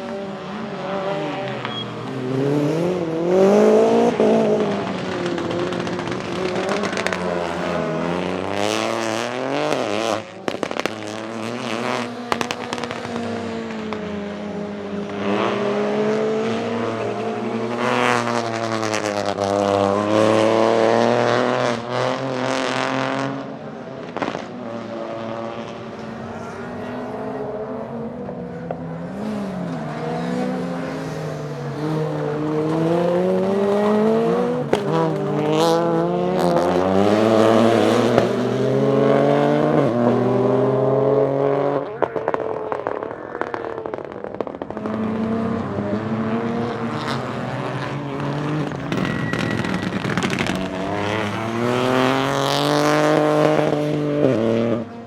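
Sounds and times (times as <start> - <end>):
car engine revving: 0.0 - 55.0
exhaust crackles and pops: 4.0 - 15.6, 23.9 - 25.8, 32.4 - 38.4, 41.6 - 53.8.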